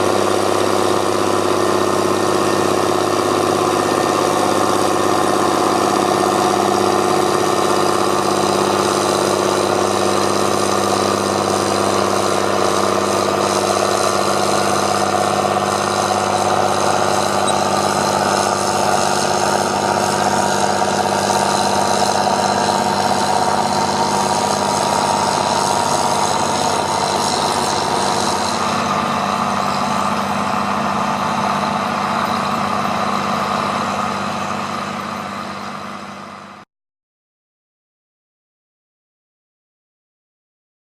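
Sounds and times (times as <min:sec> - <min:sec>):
tractor diesel engine running: 0:00.0 - 0:36.6.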